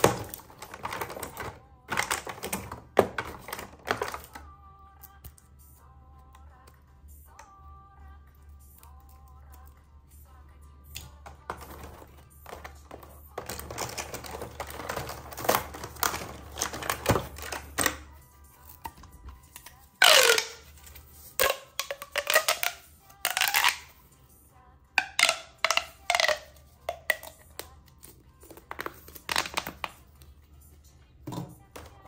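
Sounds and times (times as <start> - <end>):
plastic toys clicking: 11.0 - 18.1
plastic packaging crinkling and tearing: 13.4 - 18.0.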